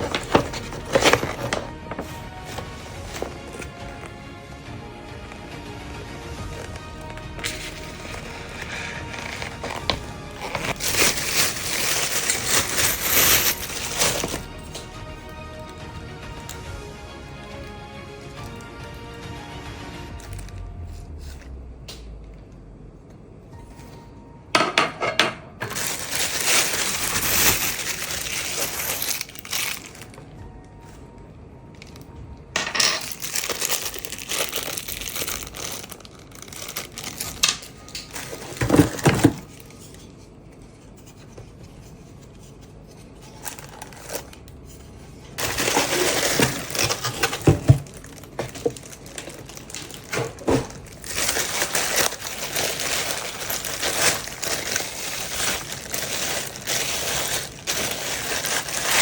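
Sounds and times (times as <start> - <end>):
plastic packaging crinkling: 0.0 - 4.2, 6.4 - 14.9, 20.1 - 21.6, 25.6 - 30.4, 32.8 - 59.0
quiet background music: 0.0 - 59.0.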